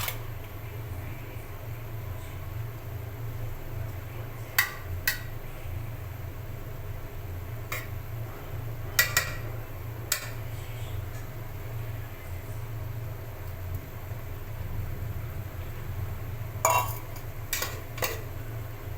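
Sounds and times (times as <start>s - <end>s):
steady low hum: 0.0s - 18.9s
metal spoon clinking dishes: 7.7s - 8.0s, 9.0s - 9.5s, 10.1s - 10.4s, 16.6s - 18.3s.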